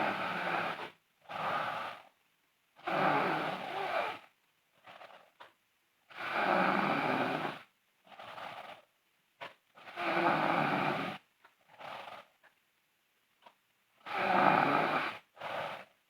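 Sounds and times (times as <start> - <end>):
girl snoring loudly: 0.0 - 2.0, 2.8 - 4.3, 6.1 - 7.7, 9.8 - 11.2, 14.0 - 15.9.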